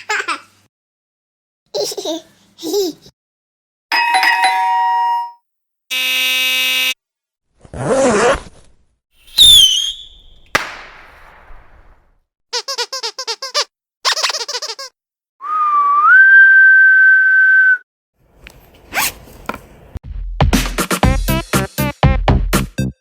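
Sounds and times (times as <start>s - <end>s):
ringing tone: 4.0s - 5.4s
high falling whistle tone: 9.2s - 10.4s, 15.4s - 17.8s.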